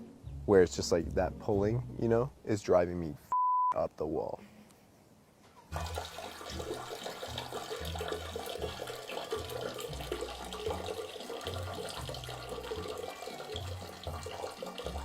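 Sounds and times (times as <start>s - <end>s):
tap water running into sink: 5.8s - 15.0s.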